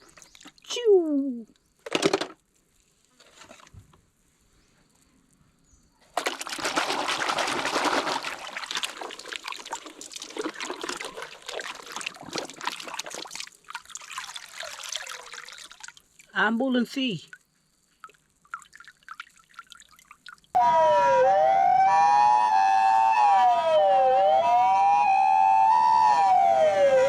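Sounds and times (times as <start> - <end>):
water trickling and splashing: 0.0 - 0.8, 6.2 - 20.6.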